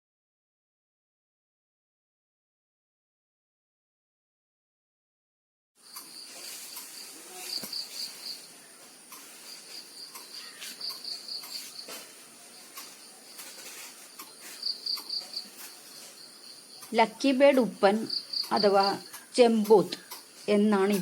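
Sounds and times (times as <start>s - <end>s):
crickets chirring: 5.8s - 21.0s
rapid pulsed chirps: 5.9s - 20.5s.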